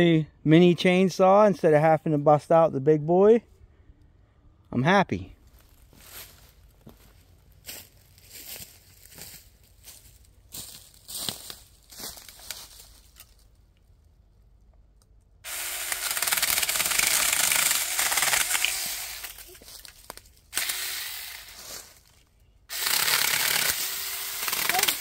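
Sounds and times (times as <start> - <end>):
electric chainsaw cutting wood: 15.4 - 19.5, 20.5 - 21.6, 22.7 - 25.0.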